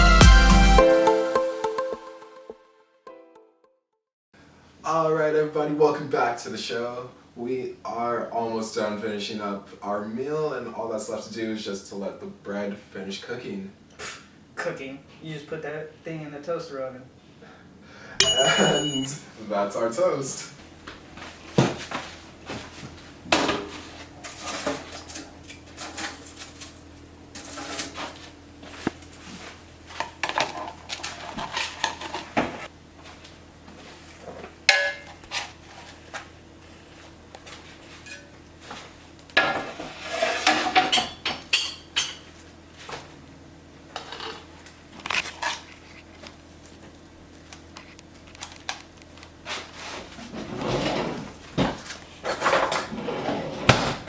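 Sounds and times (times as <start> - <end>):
dishes and utensils clinking: 18.2 - 19.1, 34.7 - 35.2, 40.4 - 42.3.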